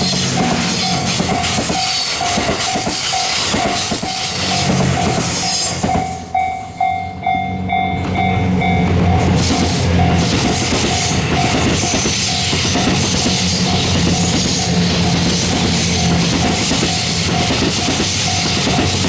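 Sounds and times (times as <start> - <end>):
level-crossing bell ringing: 0.0 - 13.0
diesel train running past: 0.0 - 19.0.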